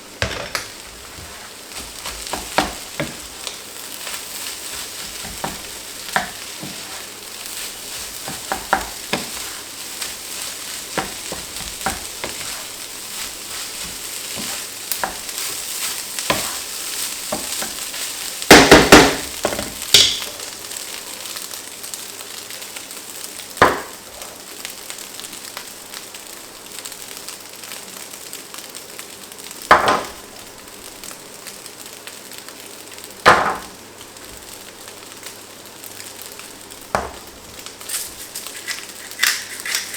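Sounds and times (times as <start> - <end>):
rice sizzling in a hot pan: 0.0 - 39.9
utensil scraping and knocking pan: 4.7 - 7.1, 7.7 - 16.7.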